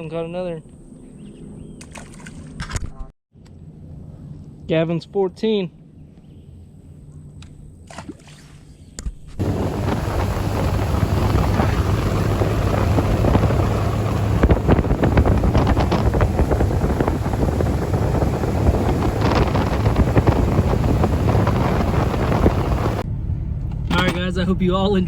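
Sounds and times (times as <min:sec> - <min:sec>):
motorboat engine running: 0:09.4 - 0:23.0
wind buffeting microphone: 0:09.4 - 0:23.1.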